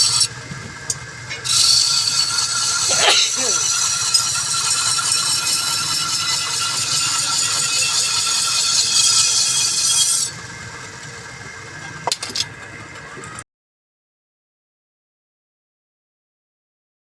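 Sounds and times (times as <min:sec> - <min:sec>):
metalworking tool hissing: 0:00.0 - 0:00.3, 0:01.3 - 0:10.4.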